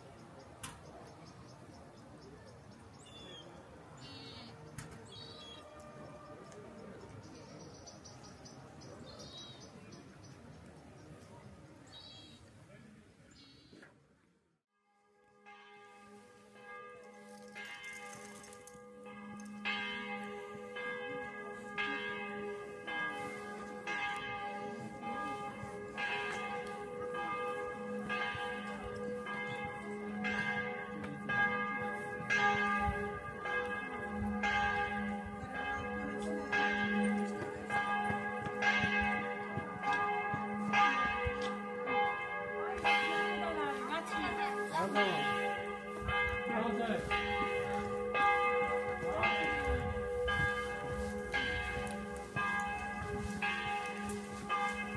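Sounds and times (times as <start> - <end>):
church bells ringing: 15.0 - 54.9.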